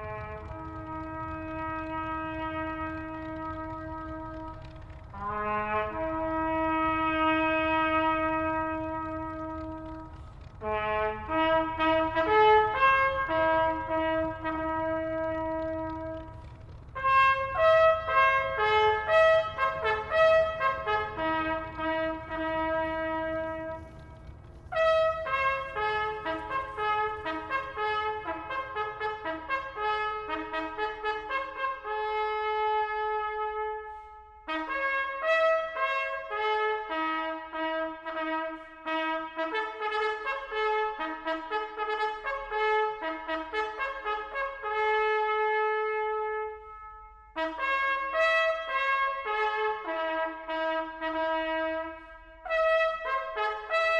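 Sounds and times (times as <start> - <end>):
faint low rumble: 0.0 - 30.4
solemn trumpet brass music: 0.0 - 53.9.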